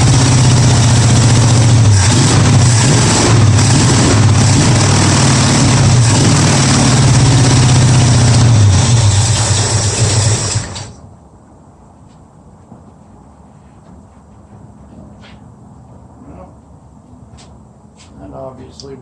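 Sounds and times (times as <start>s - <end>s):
engine running rough: 0.0s - 11.0s.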